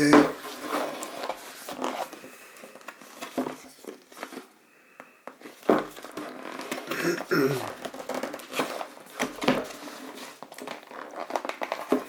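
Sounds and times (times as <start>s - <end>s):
plastic packaging crinkling: 5.4s - 12.0s.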